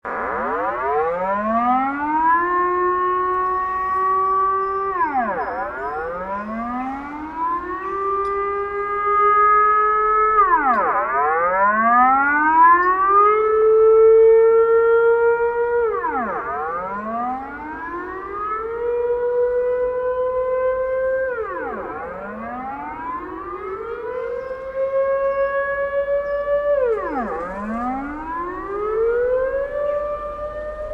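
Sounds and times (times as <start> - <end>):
air-raid siren wailing: 0.0 - 30.9.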